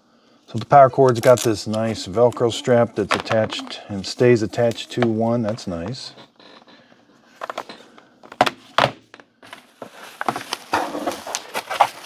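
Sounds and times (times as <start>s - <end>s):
packaging rustling: 0.5s - 6.7s, 9.4s - 12.0s.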